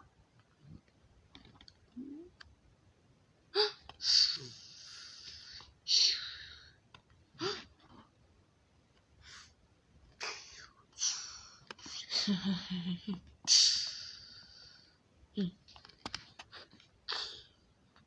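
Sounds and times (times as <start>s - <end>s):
breathy vocal hiss: 3.6s - 6.8s.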